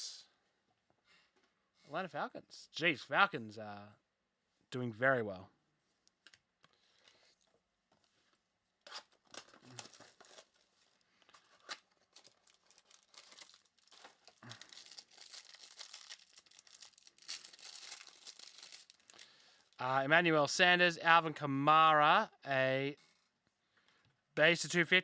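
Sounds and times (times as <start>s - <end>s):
wrapper crinkling and tearing: 8.9s - 19.8s.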